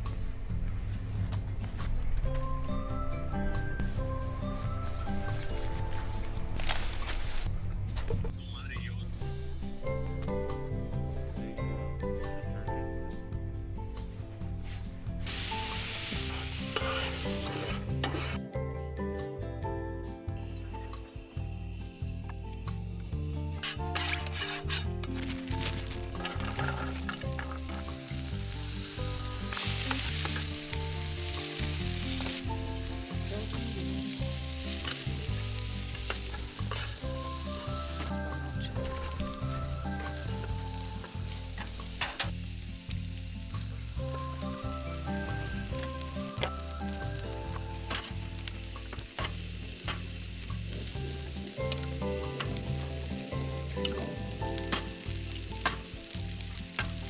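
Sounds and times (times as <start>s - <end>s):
continuous crackling sizzle: 0.0s - 7.6s, 14.0s - 18.5s, 22.6s - 57.0s
background music with low beat: 0.0s - 17.2s.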